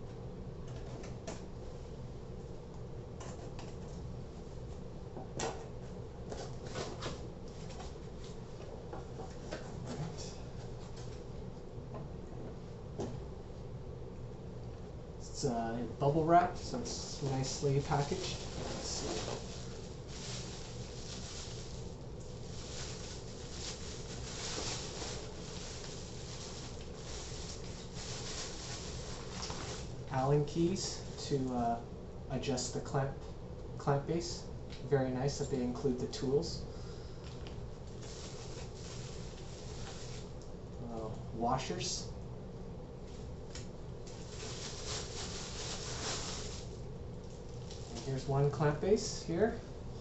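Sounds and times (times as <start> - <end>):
steady low hum: 0.0 - 50.0
package being handled: 18.0 - 29.9, 44.0 - 46.8.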